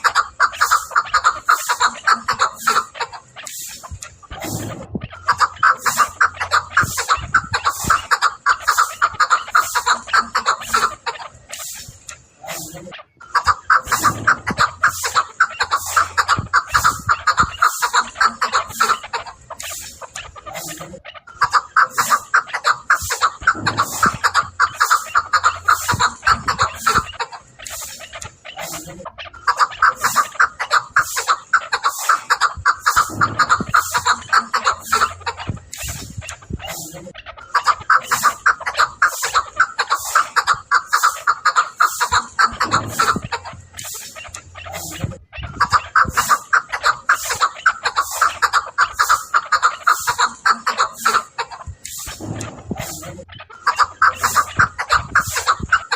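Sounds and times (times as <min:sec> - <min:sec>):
partridge clucking calls: 0:00.0 - 0:55.9.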